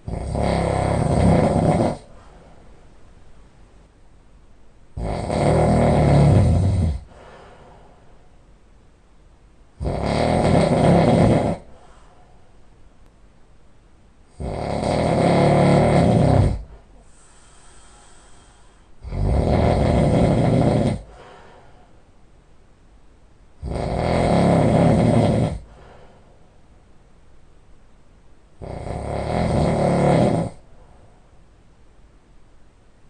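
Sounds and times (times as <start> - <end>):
man snoring heavily: 0.0 - 2.2, 5.0 - 7.2, 9.8 - 11.7, 14.4 - 21.2, 23.6 - 25.8, 28.6 - 30.6
faint breathing: 2.0 - 3.0, 7.0 - 8.5, 11.6 - 12.7, 16.6 - 19.0, 21.0 - 22.1, 25.6 - 26.9, 30.6 - 31.4.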